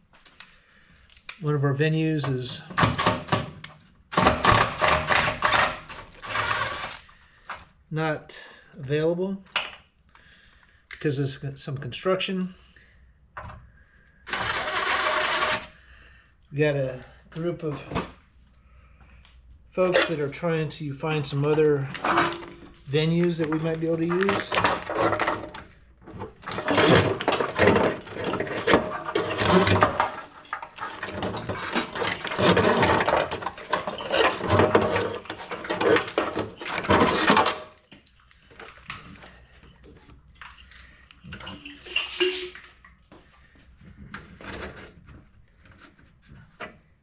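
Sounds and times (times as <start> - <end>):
hands rustling and clattering parts: 19.8 - 47.0.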